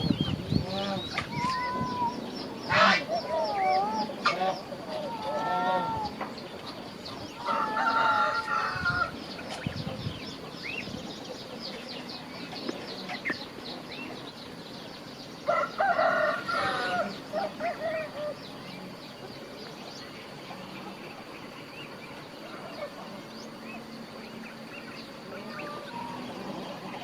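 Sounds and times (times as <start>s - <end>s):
rooster crowing: 7.4s - 9.2s, 15.5s - 18.4s.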